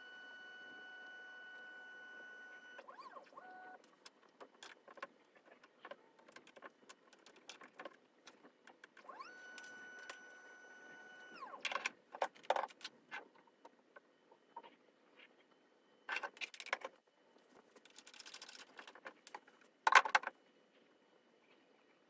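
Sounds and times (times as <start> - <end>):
small electric tool motor whining: 0.0 - 3.8, 9.0 - 11.6
small hard parts clicking and rattling: 3.8 - 9.0, 11.6 - 13.8, 16.1 - 17.0, 17.6 - 20.4.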